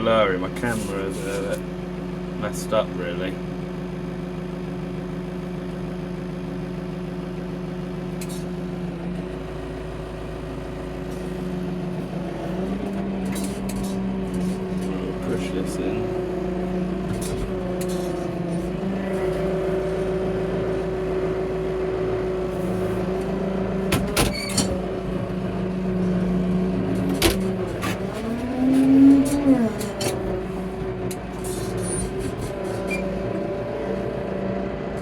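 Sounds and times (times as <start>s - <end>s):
tractor engine running: 0.0s - 35.0s
sharp knocks and clunks: 23.8s - 25.1s, 26.9s - 28.4s.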